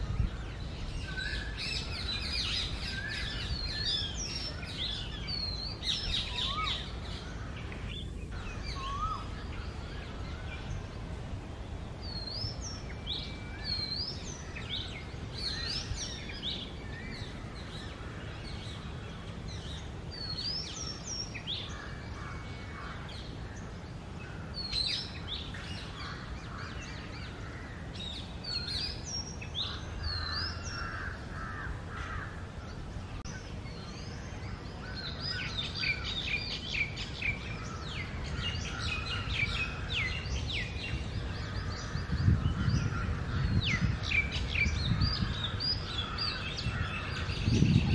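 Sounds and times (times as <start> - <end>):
bird singing whistled notes: 0.3 - 7.0, 7.9 - 10.8, 12.0 - 17.4.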